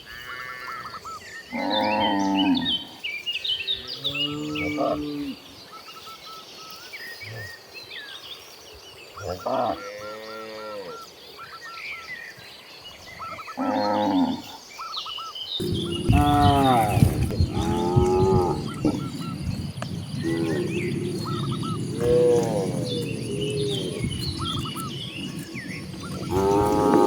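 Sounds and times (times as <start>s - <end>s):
small birds chirping: 0.9s - 27.0s
cattle mooing: 15.6s - 27.0s
steady background noise: 15.6s - 27.0s.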